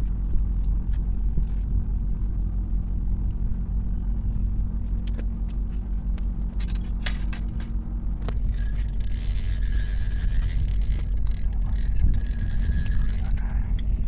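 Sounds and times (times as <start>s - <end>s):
car rumble while driving: 0.0s - 14.0s
light clicks and jangles: 8.4s - 14.0s.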